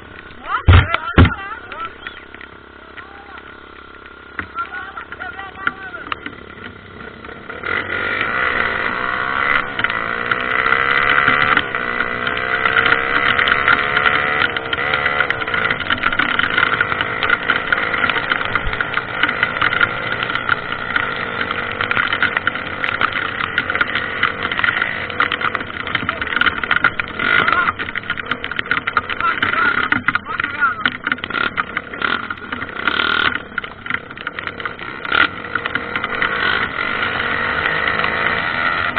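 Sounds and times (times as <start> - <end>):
dirt bike engine revving: 0.0 - 38.9.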